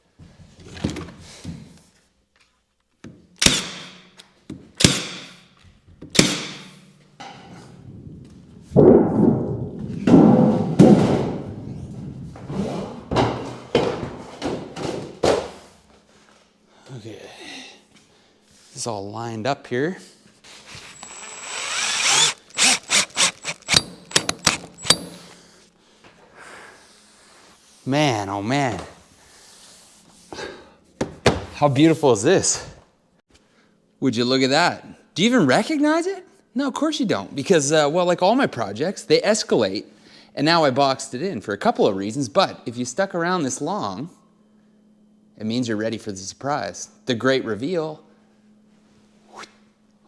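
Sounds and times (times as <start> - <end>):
power tool whining: 20.7 - 25.4
sharp metallic knocks: 22.0 - 25.3.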